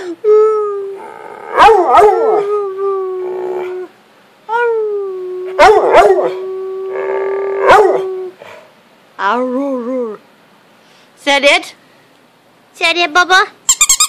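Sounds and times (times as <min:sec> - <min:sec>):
dog howling: 0:01.0 - 0:04.0, 0:05.4 - 0:08.4.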